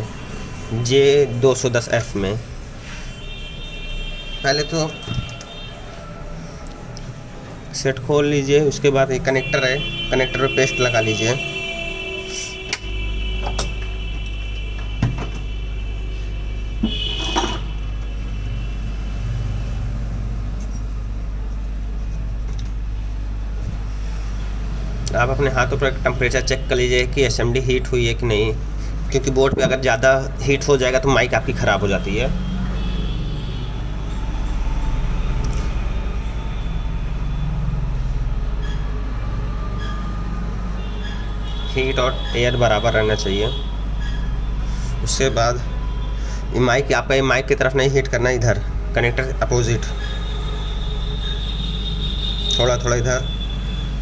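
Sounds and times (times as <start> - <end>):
hot-air station blowing: 10.7 - 26.4.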